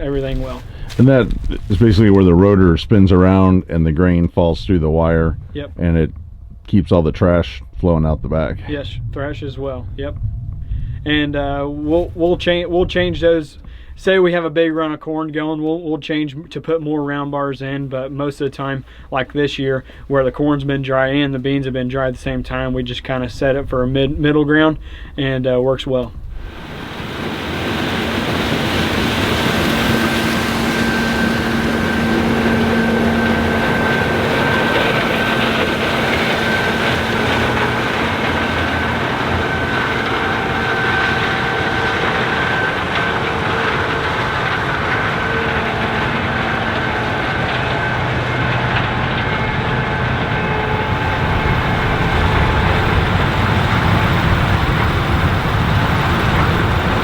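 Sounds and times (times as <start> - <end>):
steady machine whine: 0.0 - 3.4, 26.0 - 57.0
combine harvester rumbling: 0.0 - 3.9, 18.7 - 57.0.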